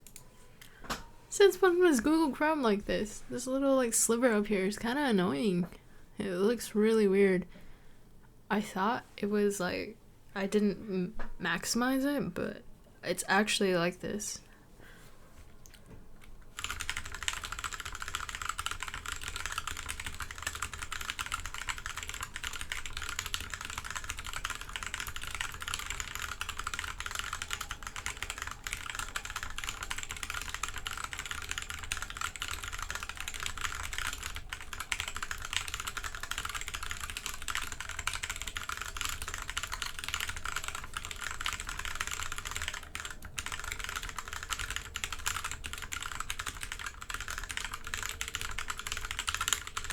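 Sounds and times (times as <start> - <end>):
mechanical keyboard typing: 16.5 - 49.9.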